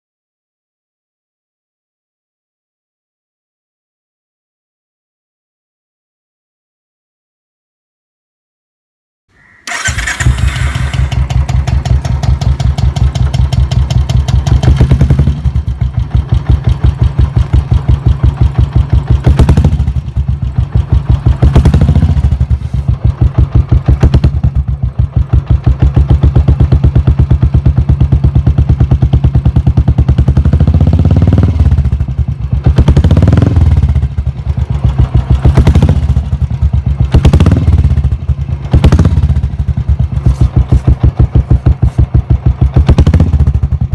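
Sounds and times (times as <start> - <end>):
motorcycle engine idling and revving: 9.6 - 43.9.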